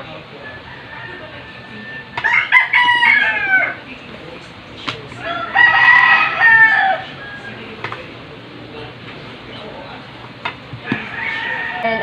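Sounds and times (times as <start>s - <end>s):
rooster crowing: 0.4s - 3.8s, 5.2s - 7.8s, 10.8s - 12.0s.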